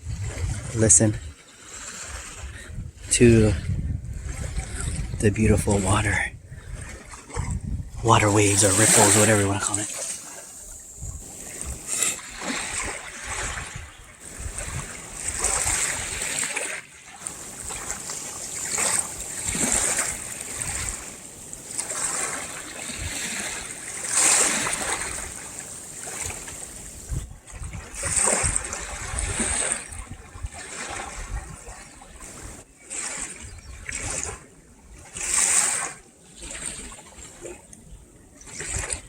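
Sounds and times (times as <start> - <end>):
small waves lapping at shore: 0.0 - 39.0.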